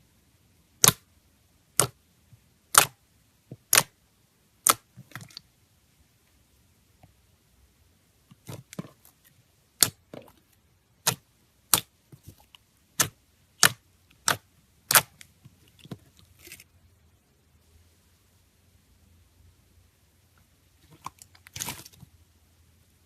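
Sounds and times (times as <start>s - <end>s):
slime air pockets popping: 0.8s - 1.0s, 4.6s - 5.2s, 8.3s - 9.0s, 13.0s - 15.2s.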